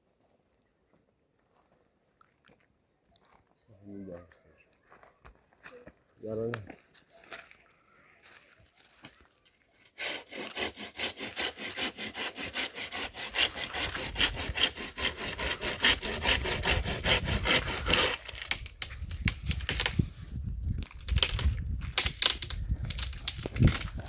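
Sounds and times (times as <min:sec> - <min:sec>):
hand saw cutting firewood: 0:09.8 - 0:20.4.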